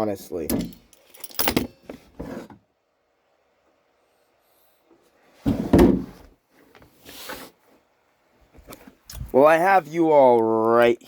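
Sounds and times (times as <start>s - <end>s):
loud thump on work surface: 5.5s - 6.2s.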